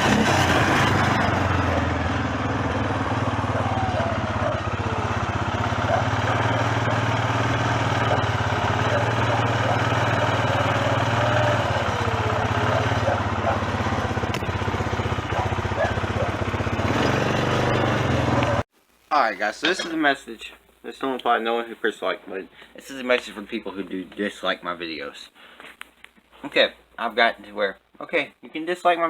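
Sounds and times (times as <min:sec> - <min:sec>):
engine running: 0:00.0 - 0:18.7.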